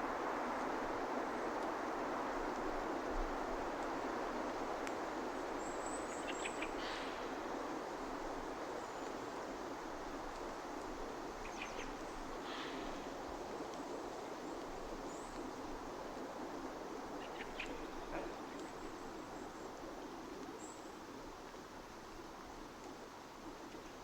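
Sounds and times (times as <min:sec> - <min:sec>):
outdoor background noise: 0:00.0 - 0:24.0.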